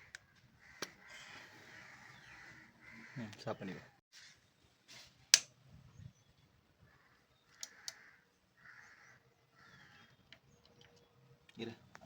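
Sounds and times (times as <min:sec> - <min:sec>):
faint sharp clicks: 0:07.5 - 0:08.0.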